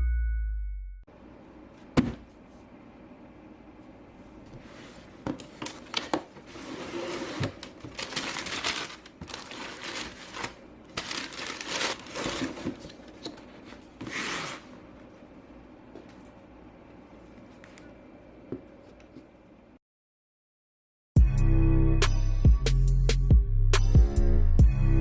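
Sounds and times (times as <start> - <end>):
paper and cardboard rustling: 4.7 - 14.7.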